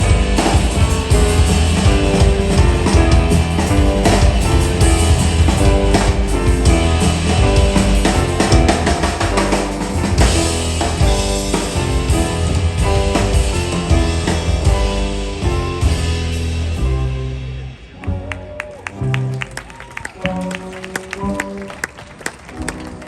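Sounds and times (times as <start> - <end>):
drum kit with cymbals: 0.0 - 17.9
plucked double bass: 0.0 - 18.4
piano: 0.0 - 23.0.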